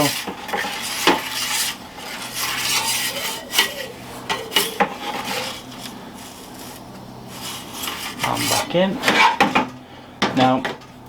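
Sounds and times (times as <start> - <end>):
metal peel scraping and clinking: 0.0 - 9.4.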